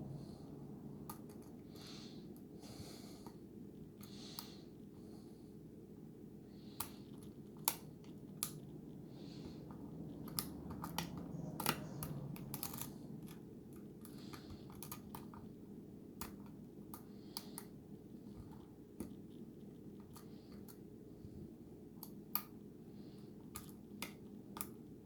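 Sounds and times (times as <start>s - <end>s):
lock pick clicking and scraping: 9.6s - 15.5s.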